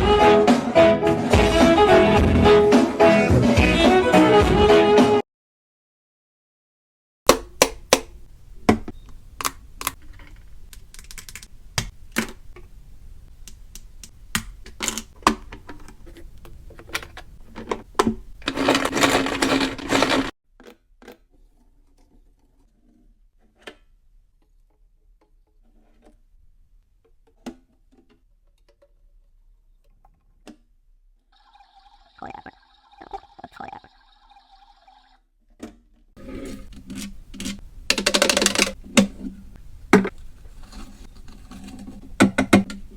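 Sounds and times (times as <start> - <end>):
washing machine electronic tone: 31.4 - 35.2.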